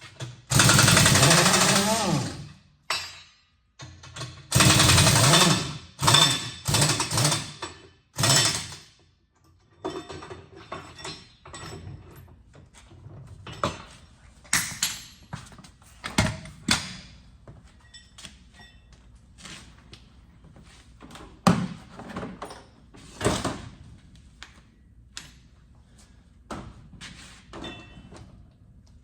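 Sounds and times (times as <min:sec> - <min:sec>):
impact wrench bursts: 0:00.5 - 0:02.5, 0:04.5 - 0:07.6.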